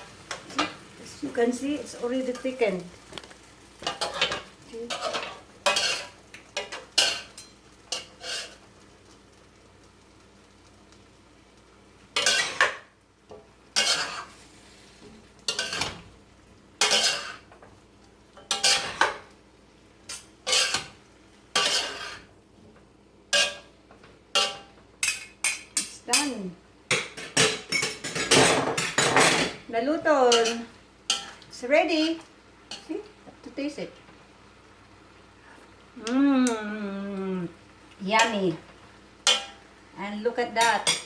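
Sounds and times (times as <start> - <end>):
utensil scraping a pan: 3.8 - 8.7, 12.2 - 12.8, 13.8 - 16.1, 16.8 - 17.6, 18.4 - 19.3, 20.1 - 22.3.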